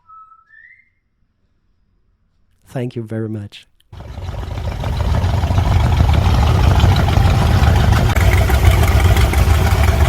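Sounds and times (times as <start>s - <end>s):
engine idling: 4.0s - 10.0s.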